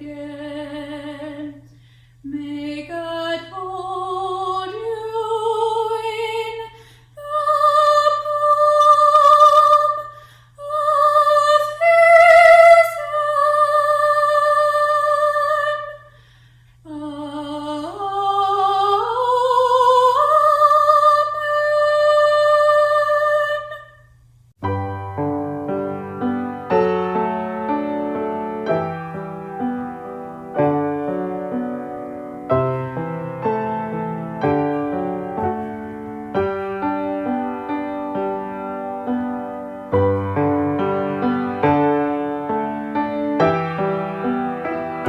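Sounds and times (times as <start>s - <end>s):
woman singing unaccompanied: 0.0s - 16.1s, 16.9s - 24.0s.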